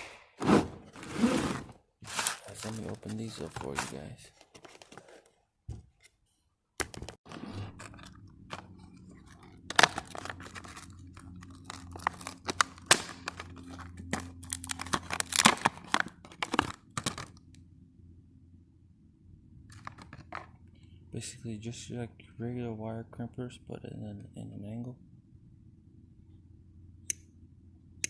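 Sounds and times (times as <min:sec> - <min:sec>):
packaging tearing and crinkling: 0:02.0 - 0:05.2, 0:07.7 - 0:17.4
low steady hum: 0:07.5 - 0:28.0.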